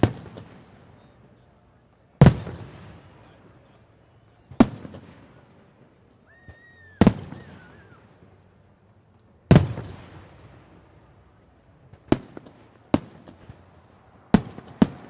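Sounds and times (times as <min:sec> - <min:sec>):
firework bangs with rumbling echo: 0:00.0 - 0:00.9, 0:02.2 - 0:03.4, 0:09.5 - 0:11.2, 0:11.9 - 0:15.0
wavering high whistle: 0:05.3 - 0:08.1.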